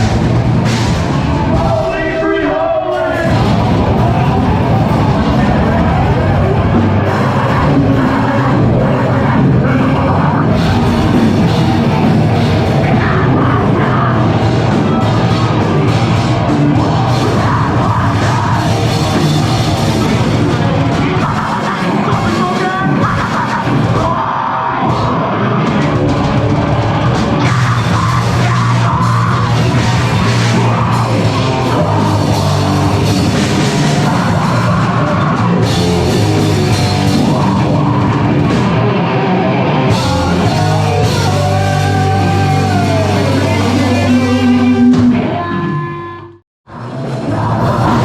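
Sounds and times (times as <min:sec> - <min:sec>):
drum kit: 0:00.0 - 0:46.0, 0:46.7 - 0:48.0
heavy rock band playing: 0:00.0 - 0:48.0
sustained low bass notes: 0:03.1 - 0:24.0, 0:25.6 - 0:46.4.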